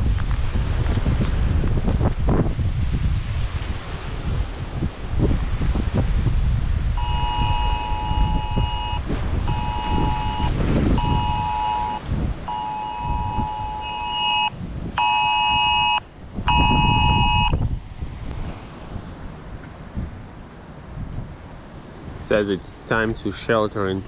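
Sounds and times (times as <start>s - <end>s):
wind buffeting microphone: 0.0s - 24.0s
phone emergency alert beeps: 7.0s - 17.6s.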